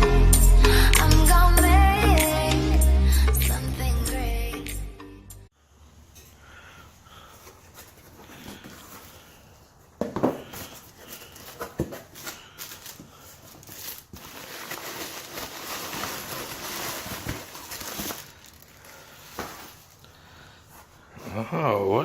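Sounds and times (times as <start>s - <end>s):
crinkling and rustling: 7.2s - 21.1s.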